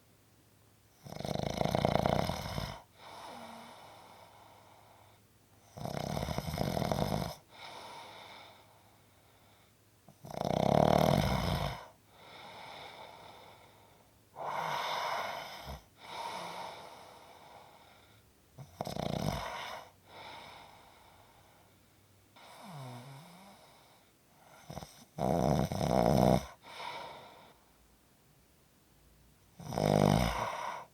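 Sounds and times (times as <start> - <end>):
quiet breaths: 0.0 - 30.9
person snoring: 1.0 - 4.8, 5.7 - 8.7, 10.2 - 13.6, 14.4 - 17.8, 18.6 - 21.2, 22.4 - 27.6, 29.6 - 30.9.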